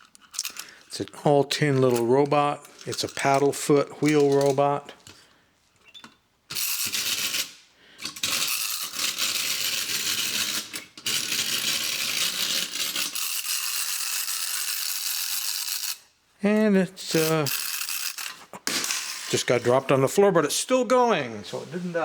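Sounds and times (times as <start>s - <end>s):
wind-up toy robot gears rattling: 6.5s - 7.6s, 8.2s - 16.1s, 17.0s - 19.4s.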